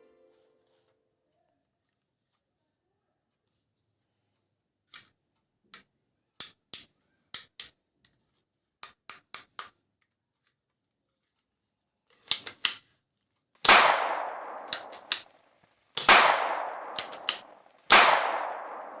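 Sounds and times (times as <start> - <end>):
echoing gunshot bangs: 13.7 - 15.4, 16.0 - 19.0
toy gun clicking: 16.0 - 17.6.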